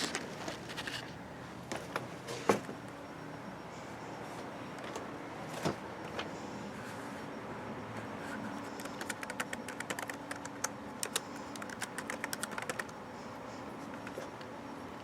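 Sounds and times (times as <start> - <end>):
low room hum: 0.0 - 15.0
sharp clicks and taps: 8.8 - 13.0.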